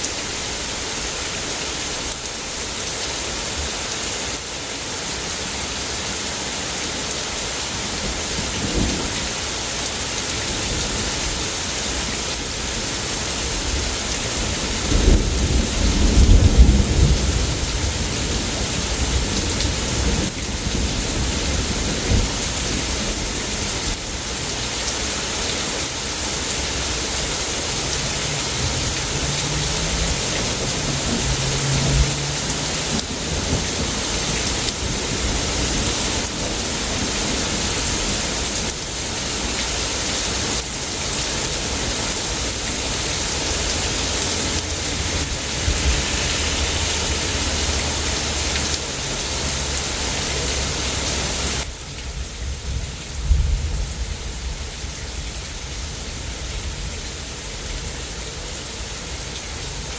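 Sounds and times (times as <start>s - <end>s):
heavy rain falling: 0.0s - 59.9s
thunderclap and rumble: 13.4s - 24.0s, 26.3s - 39.7s, 40.5s - 55.5s.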